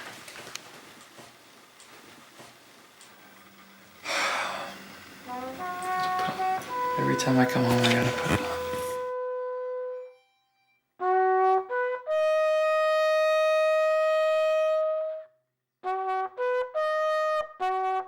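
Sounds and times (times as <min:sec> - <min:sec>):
solo trumpet playing: 0:04.1 - 0:18.0.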